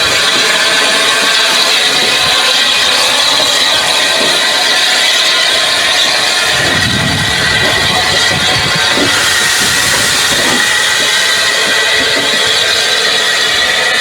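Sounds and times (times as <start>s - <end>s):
steam locomotive hissing: 0.0s - 14.0s
low rumble: 6.5s - 12.5s.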